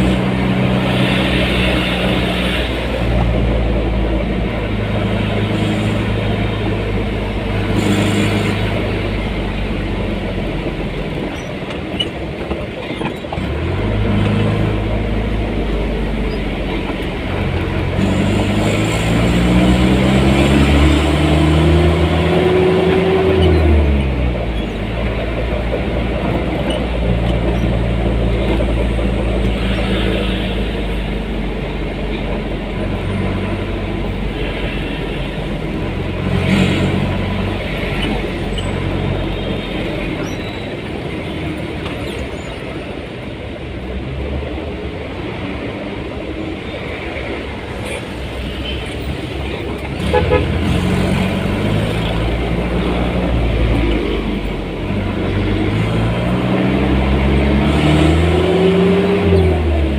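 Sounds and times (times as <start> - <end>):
vehicle engine driving: 0.0 - 59.9
car horn toot: 50.0 - 50.7.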